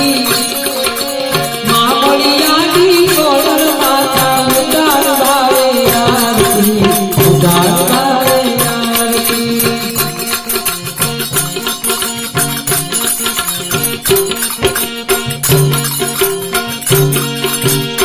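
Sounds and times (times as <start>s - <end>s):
person singing devotional song: 0.0s - 12.4s
drums beating: 0.0s - 18.0s
harmonium held tones: 0.0s - 18.0s.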